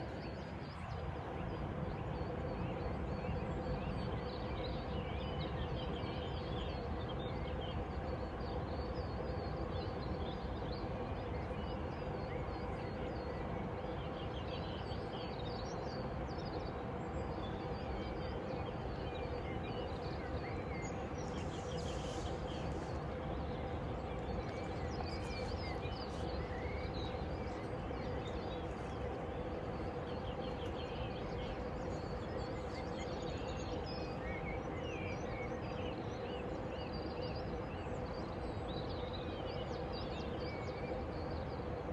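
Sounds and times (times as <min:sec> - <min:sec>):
faint constant hum: 0:00.0 - 0:41.9
low background rumble: 0:00.0 - 0:41.9
small birds chirping: 0:17.5 - 0:41.6.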